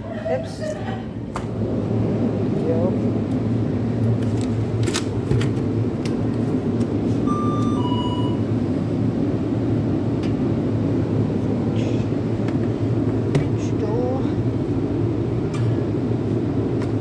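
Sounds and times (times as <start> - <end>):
refrigerator hum: 0.0 - 17.0
short electronic beeps: 7.2 - 8.4.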